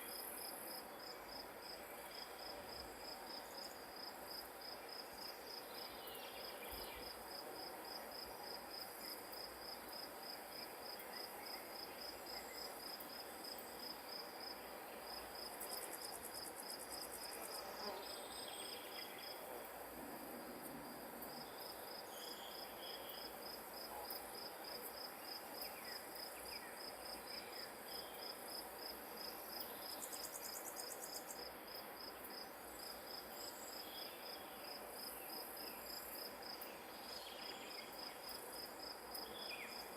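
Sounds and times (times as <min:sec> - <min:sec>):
faint outdoor hiss: 0:00.0 - 0:39.9
insect chirping: 0:00.0 - 0:39.9
buzzy insect trills: 0:24.4 - 0:39.9.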